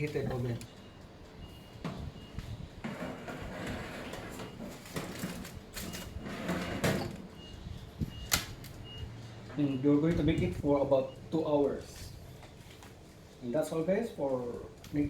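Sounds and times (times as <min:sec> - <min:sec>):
metal tray clattering and scraping: 0:02.8 - 0:05.6.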